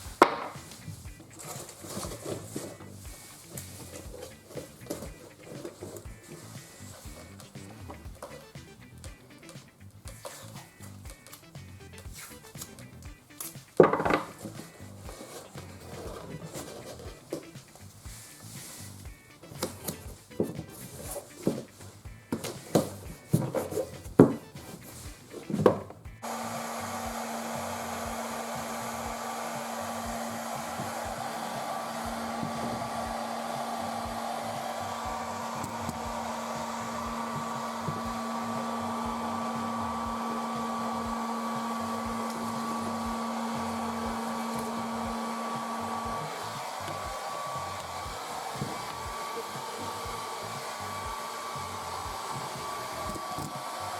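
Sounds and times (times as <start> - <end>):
electric blower humming: 0.0 - 53.9.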